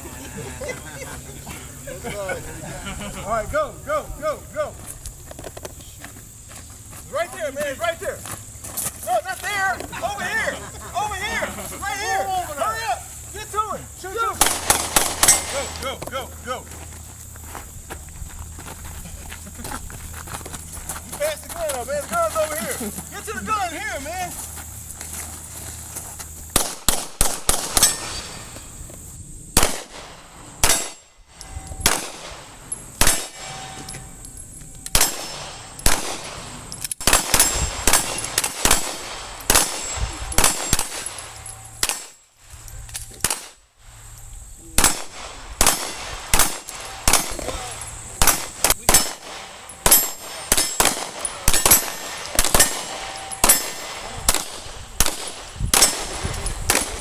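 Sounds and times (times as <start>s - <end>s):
handgun shots: 14.4s - 16.0s, 26.5s - 28.3s, 29.6s - 31.0s, 31.8s - 32.4s, 33.0s - 33.9s, 34.9s - 42.2s, 43.2s - 43.6s, 44.8s - 57.0s.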